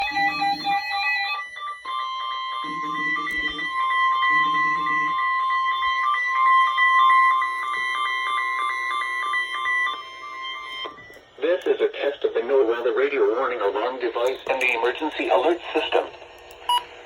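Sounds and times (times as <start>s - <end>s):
high piercing alarm tone: 0.0s - 13.5s
faint music: 0.0s - 17.0s.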